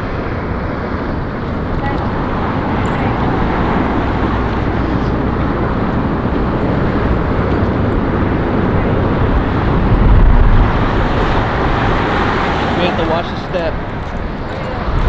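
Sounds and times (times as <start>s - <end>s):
strong wind buffeting microphone: 0.0s - 15.0s.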